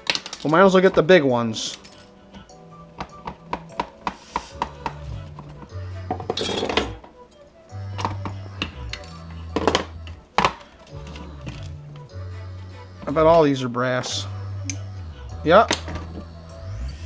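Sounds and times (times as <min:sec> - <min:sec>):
metallic clicks and clinks: 0:00.0 - 0:02.6
background music with bass line: 0:01.0 - 0:17.0
metal scrapes: 0:04.0 - 0:07.2.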